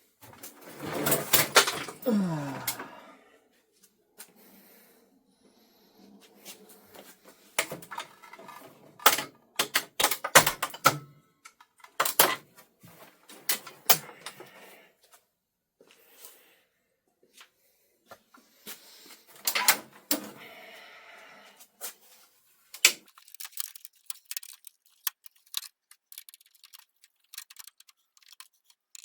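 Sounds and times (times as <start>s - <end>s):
parts clattering when handled: 21.8s - 29.0s.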